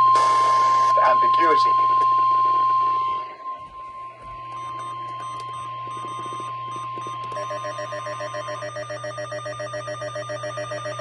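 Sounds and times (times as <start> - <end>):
fast-pulsing ringing alarm: 0.0 - 11.0
steady warning tone: 0.0 - 11.0.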